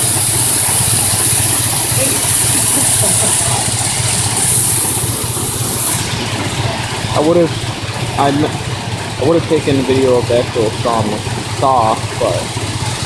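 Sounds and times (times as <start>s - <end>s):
loud hiss of water: 0.0s - 7.3s
sawmill machinery humming: 0.0s - 13.0s.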